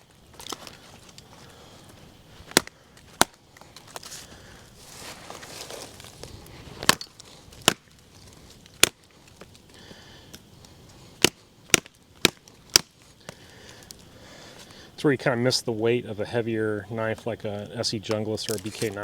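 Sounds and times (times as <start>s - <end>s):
machete chopping into wood: 2.5s - 3.4s, 6.8s - 8.0s, 8.8s - 9.1s, 11.2s - 13.0s.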